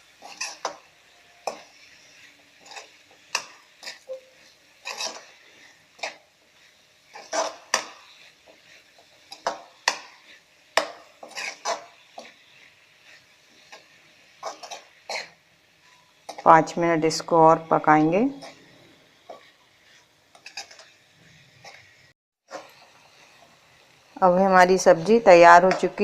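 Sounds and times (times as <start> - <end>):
utensil scraping a pan: 0.1 - 16.5, 17.9 - 23.6.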